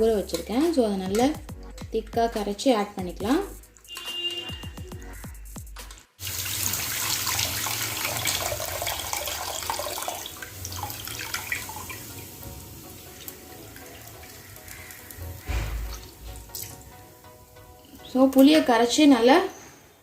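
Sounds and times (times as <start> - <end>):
liquid pouring into pot: 6.2 - 16.8
dull thump: 15.5 - 15.9.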